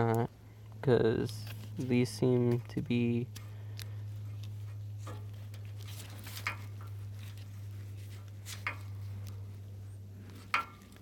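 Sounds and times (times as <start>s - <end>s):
steady low hum: 0.0s - 11.0s
light clicks and rustles: 1.2s - 9.6s.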